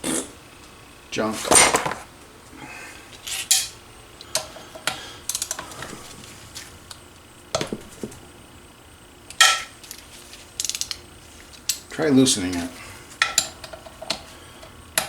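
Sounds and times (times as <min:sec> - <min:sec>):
metal engine parts clinking: 0:01.4 - 0:02.1.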